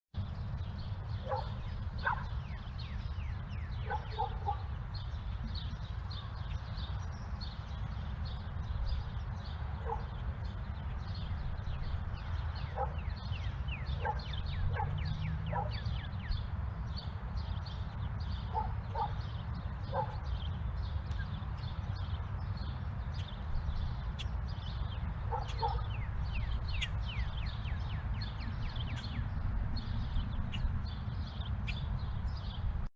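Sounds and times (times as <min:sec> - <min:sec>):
small birds chirping: 0:00.2 - 0:32.8
dog barking: 0:01.2 - 0:02.3, 0:03.8 - 0:04.7, 0:09.8 - 0:10.1, 0:12.7 - 0:13.0, 0:14.0 - 0:15.8, 0:18.5 - 0:19.2, 0:19.9 - 0:20.2, 0:25.3 - 0:26.0.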